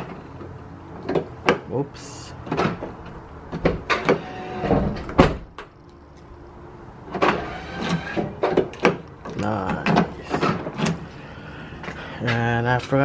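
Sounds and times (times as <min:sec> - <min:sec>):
door lock clicks and clunks: 0:01.0 - 0:01.7, 0:02.4 - 0:06.3, 0:07.1 - 0:11.1.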